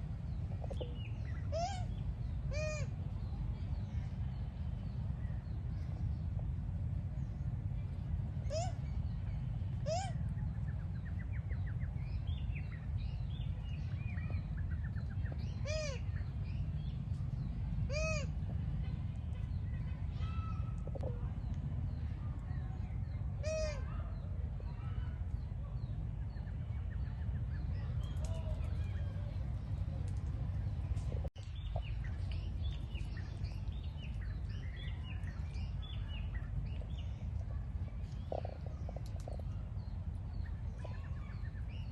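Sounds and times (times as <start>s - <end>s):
steady low rumble: 0.0s - 41.9s
small birds chirping: 24.8s - 41.9s.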